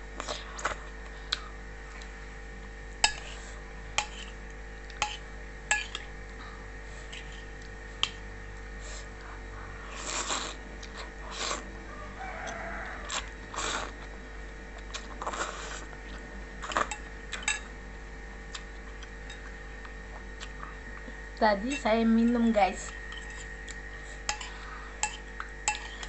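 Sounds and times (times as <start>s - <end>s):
person slurping noodles: 9.8s - 11.8s, 13.1s - 14.1s, 14.9s - 16.9s.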